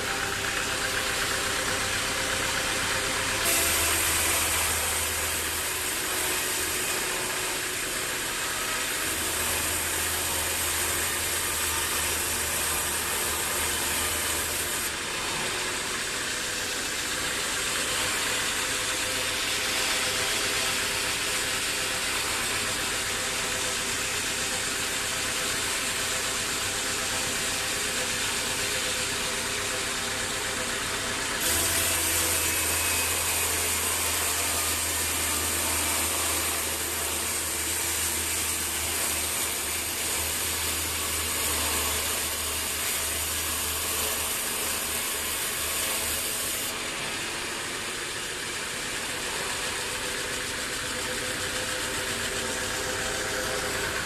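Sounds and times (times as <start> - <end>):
sawmill machinery drone: 0.0 - 54.0
loud high hiss: 3.3 - 8.5.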